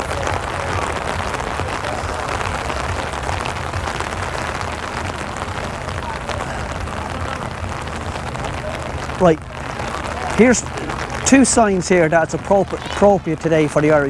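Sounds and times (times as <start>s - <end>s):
heavy rain falling: 0.0s - 14.0s.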